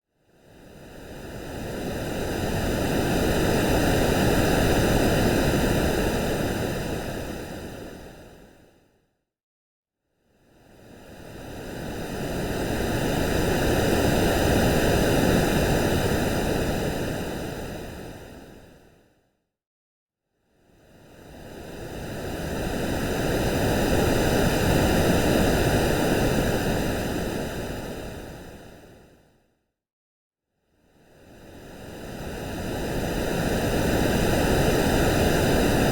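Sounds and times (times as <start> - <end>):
synthesized ocean waves: 31.2 - 35.9.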